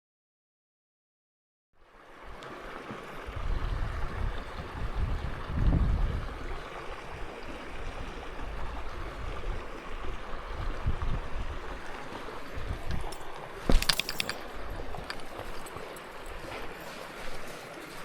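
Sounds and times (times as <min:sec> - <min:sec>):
shallow river running: 0:01.8 - 0:18.0
wind rumble on microphone: 0:03.3 - 0:13.3.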